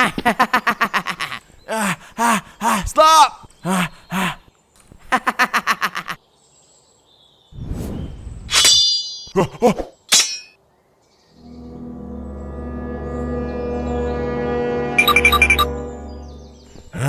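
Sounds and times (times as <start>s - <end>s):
music: 11.4s - 16.9s.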